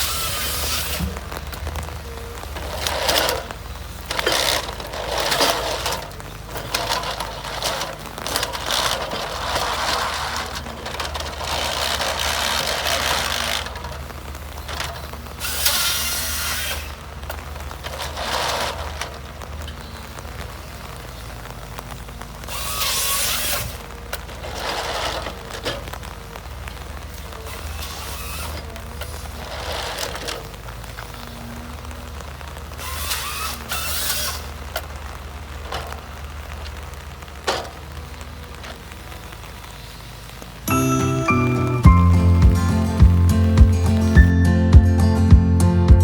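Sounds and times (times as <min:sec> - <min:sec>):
harvester head mechanical bursts: 0:00.0 - 0:44.3
low engine hum: 0:33.6 - 0:46.0.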